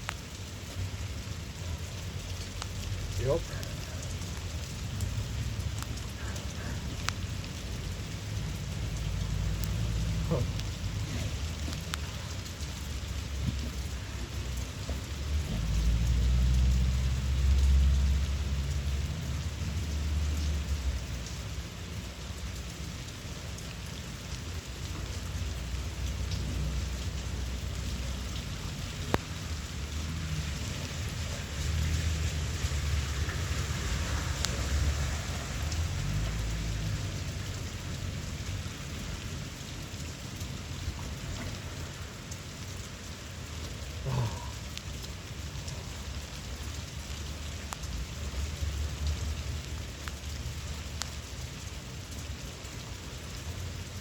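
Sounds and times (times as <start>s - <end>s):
low rumbles: 0.0s - 21.0s
steady rain: 0.0s - 54.0s.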